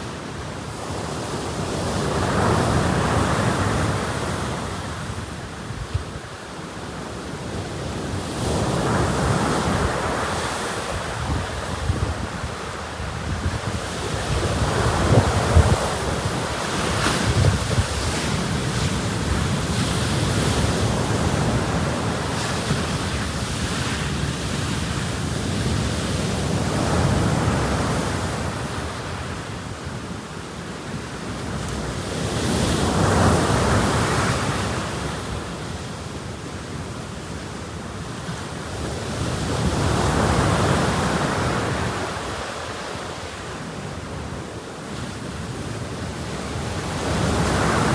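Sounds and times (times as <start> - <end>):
sea waves breaking on beach: 0.0 - 47.9
wind buffeting microphone: 8.3 - 23.4.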